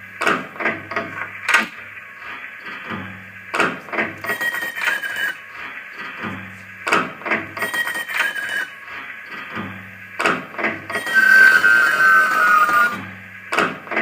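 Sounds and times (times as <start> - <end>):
tape loop repeating: 10.9 - 13.0
short wavering high tones: 11.0 - 13.0.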